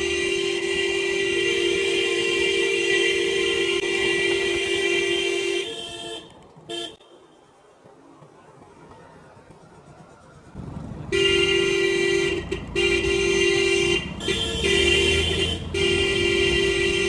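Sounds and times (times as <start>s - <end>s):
loud motorcycle horn: 0.0s - 7.0s, 10.6s - 17.0s.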